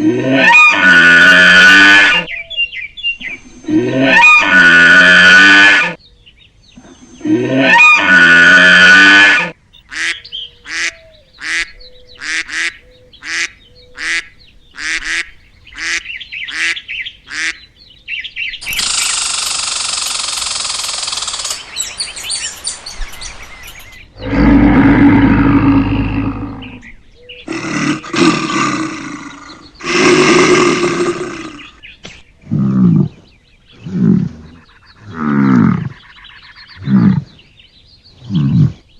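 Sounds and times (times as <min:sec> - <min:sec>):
deep animal call: 0:00.0 - 0:02.5, 0:03.2 - 0:06.0, 0:06.8 - 0:09.6, 0:23.2 - 0:37.5, 0:38.1 - 0:38.9
farm animal calls: 0:00.0 - 0:06.0, 0:06.8 - 0:17.8, 0:18.6 - 0:38.9
hiss-like animal call: 0:18.6 - 0:26.8.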